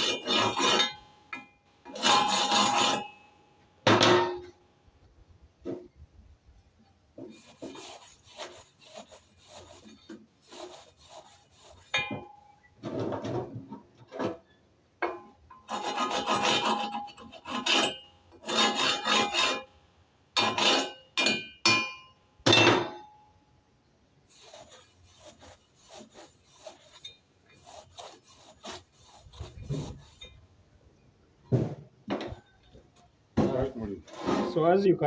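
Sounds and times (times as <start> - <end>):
wire brush scrubbing metal: 0.0 - 1.1, 1.9 - 3.2, 7.3 - 12.3, 15.7 - 19.6, 24.3 - 30.4.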